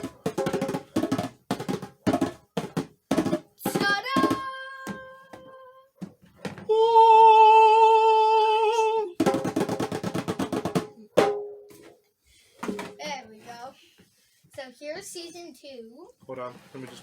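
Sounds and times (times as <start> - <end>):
drum roll: 0.0 - 5.1, 9.2 - 11.4
drum hits: 0.0 - 5.5, 9.2 - 11.7, 12.6 - 13.0.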